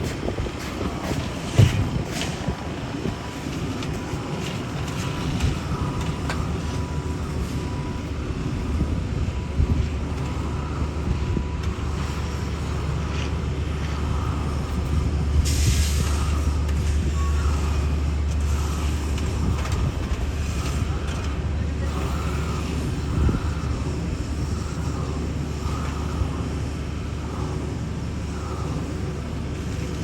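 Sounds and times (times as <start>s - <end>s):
diesel paving equipment rumbling: 0.0s - 30.0s
hissing air burst: 15.4s - 17.0s.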